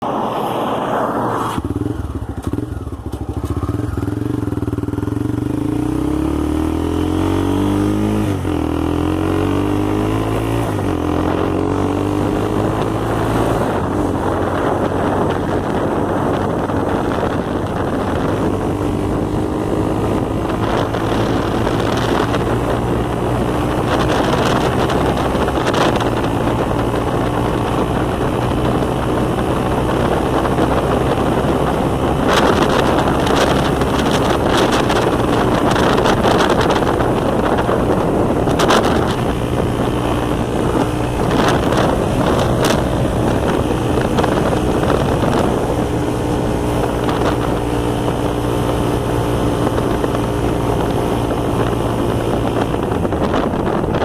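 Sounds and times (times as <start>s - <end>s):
strange exhaust noise: 0.0s - 54.0s
motorcycle engine running: 1.6s - 54.0s.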